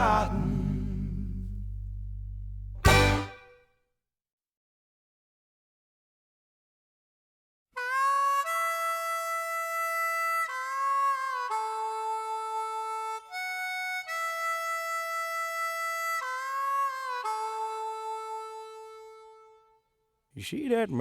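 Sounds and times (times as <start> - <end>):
harmonica slow melody: 0.0 - 3.6, 7.8 - 19.9.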